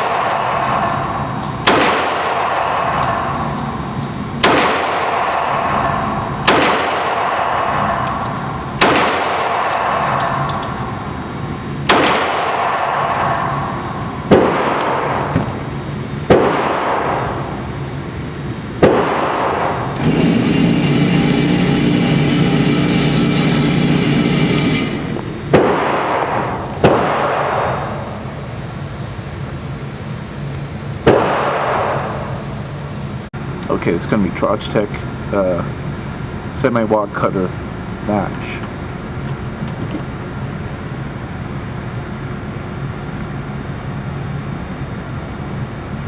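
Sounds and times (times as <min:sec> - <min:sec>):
pistol shots with ringing tail: 0:00.0 - 0:15.3, 0:16.3 - 0:17.6, 0:18.8 - 0:19.9, 0:25.5 - 0:28.3, 0:31.0 - 0:32.4.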